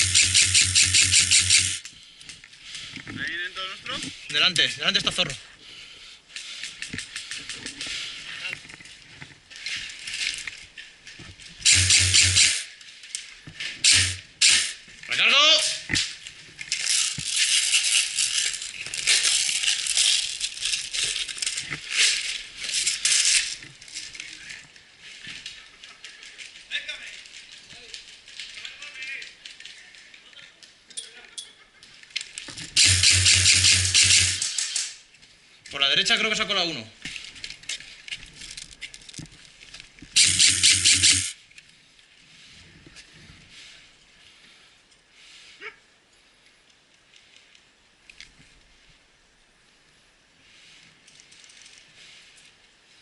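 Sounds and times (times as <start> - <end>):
airsoft gun full-auto burst: 0.0 - 1.8, 11.6 - 12.7, 13.8 - 14.8, 32.8 - 34.8, 40.2 - 41.4
bbs rattling in magazine: 16.0 - 24.8, 31.9 - 35.0, 37.1 - 41.4.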